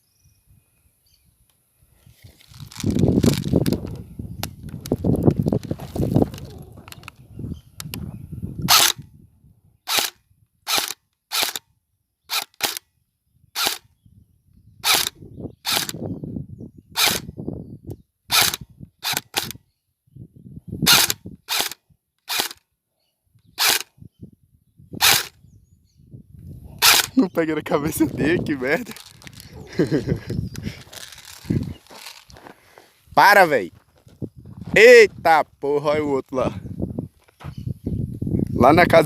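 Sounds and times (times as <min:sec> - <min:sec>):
airsoft gun firing single shots: 0:08.7 - 0:09.0, 0:09.9 - 0:11.6, 0:12.3 - 0:12.8, 0:13.6 - 0:13.8, 0:14.9 - 0:15.1, 0:15.7 - 0:16.0, 0:18.3 - 0:19.6, 0:20.9 - 0:22.6, 0:23.6 - 0:23.9, 0:25.0 - 0:25.3, 0:26.8 - 0:27.1.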